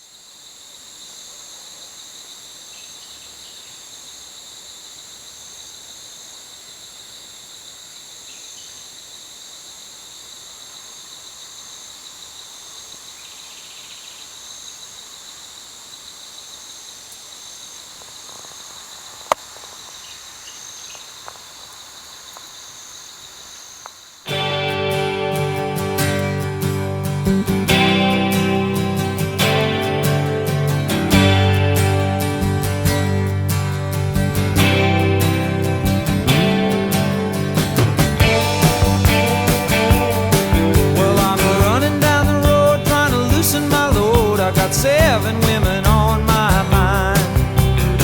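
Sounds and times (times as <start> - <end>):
insects chorusing: 0.0 - 48.0.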